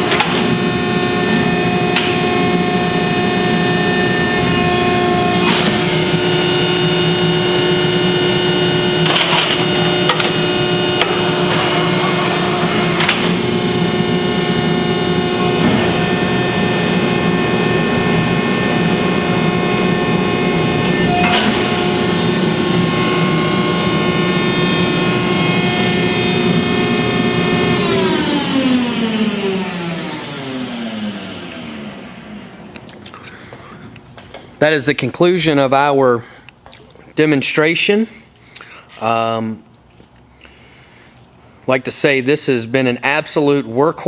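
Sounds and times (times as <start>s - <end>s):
sharp machine clunks: 0.0s - 0.6s, 5.2s - 6.3s, 8.8s - 17.0s, 18.5s - 25.7s
baler motor whine and hum: 0.0s - 34.6s.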